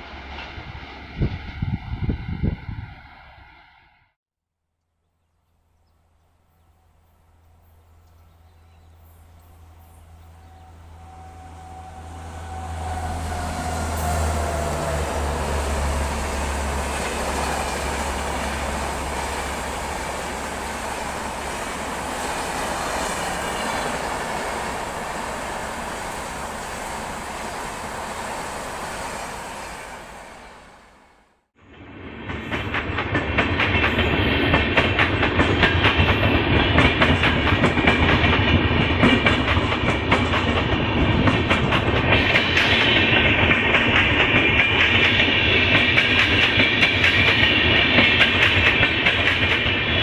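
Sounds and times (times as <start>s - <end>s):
train passing: 0.0s - 4.2s, 6.7s - 50.0s
train wheels rushing: 10.6s - 50.0s.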